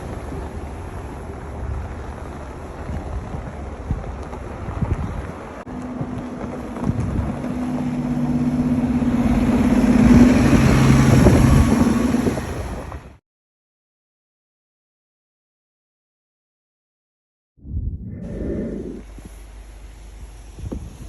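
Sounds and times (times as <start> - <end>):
road and wind noise: 0.0 - 13.2, 17.6 - 21.0
vehicle engine humming: 0.0 - 13.2, 18.2 - 21.0.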